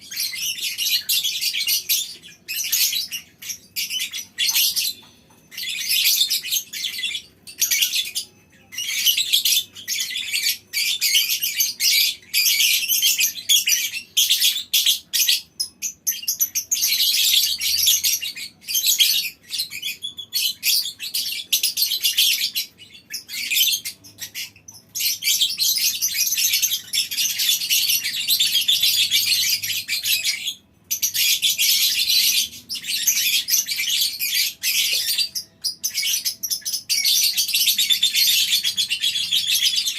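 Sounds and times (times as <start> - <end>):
lovebirds chattering: 0.0 - 39.9.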